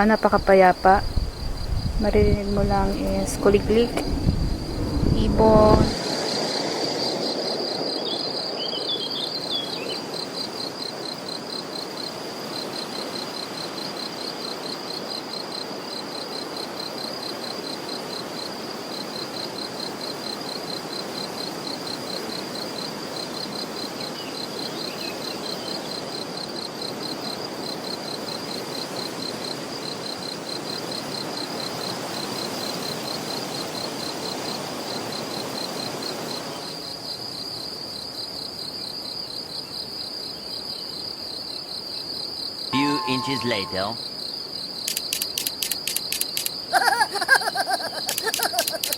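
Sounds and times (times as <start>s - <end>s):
steady background hiss: 0.0s - 20.3s
crickets chirping: 0.0s - 48.9s.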